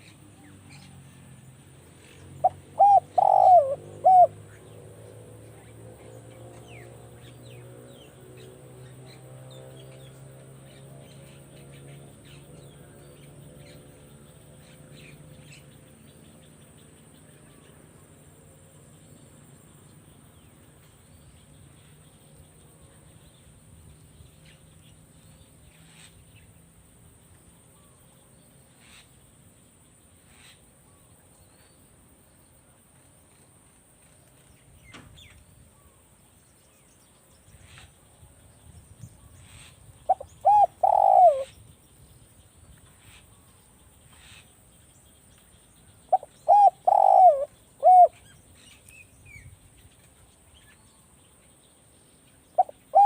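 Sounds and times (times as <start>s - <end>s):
dove cooing: 2.3s - 4.5s, 40.1s - 41.5s, 46.1s - 48.2s, 52.6s - 53.0s.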